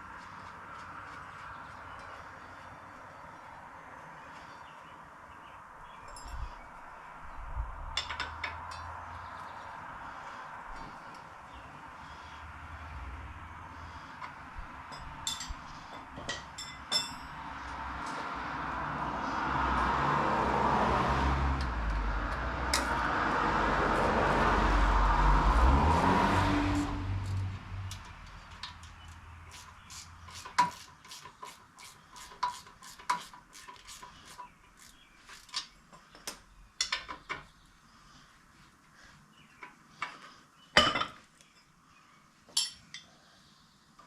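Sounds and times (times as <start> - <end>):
light metallic clinks and taps: 6.0 - 6.5, 8.0 - 8.9, 14.2 - 17.4, 42.5 - 43.1
loud rumbling engine-like noise: 17.3 - 29.1.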